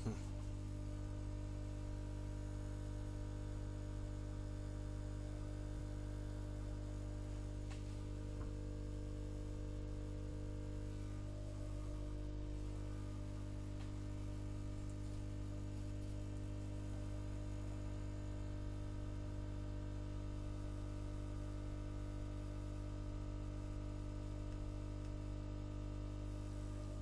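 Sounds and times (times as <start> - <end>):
electrical mains hum: 0.0 - 27.0.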